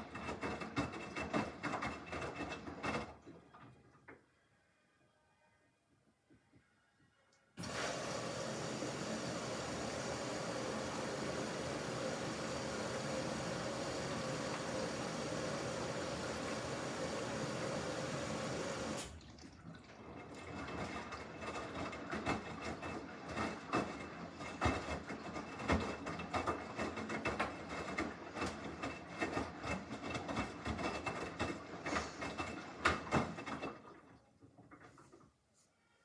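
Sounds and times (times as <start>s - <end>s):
water filling washing machine: 0.0s - 4.1s, 7.6s - 35.3s.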